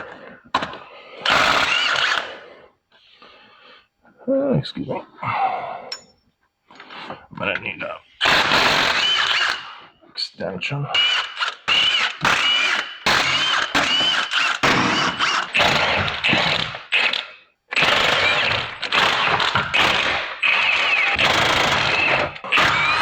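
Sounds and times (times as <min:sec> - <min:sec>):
impact wrench hammering on bolts: 0:12.2 - 0:17.1.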